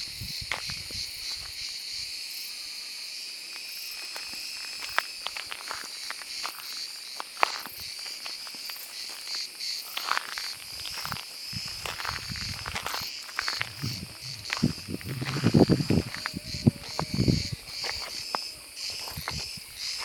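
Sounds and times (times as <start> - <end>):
cicada buzzing: 0.0 - 20.0
low rumble: 13.6 - 17.3.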